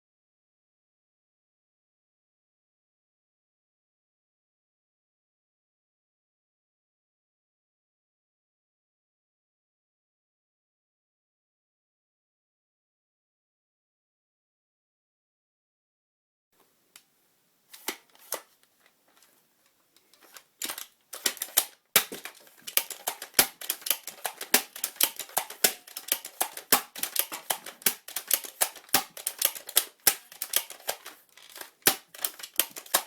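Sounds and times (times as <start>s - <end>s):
toy blaster mechanism clicking: 20.2s - 33.0s.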